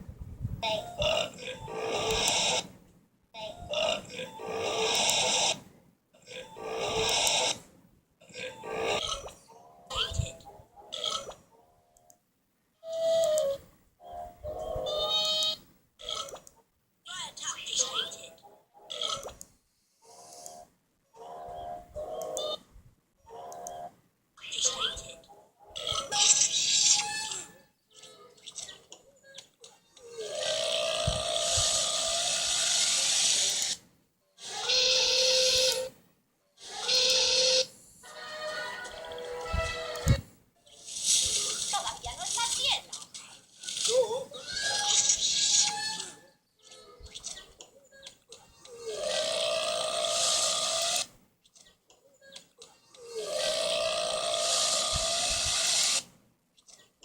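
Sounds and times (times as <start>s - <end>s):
dinosaur burp: 48.9s - 50.4s.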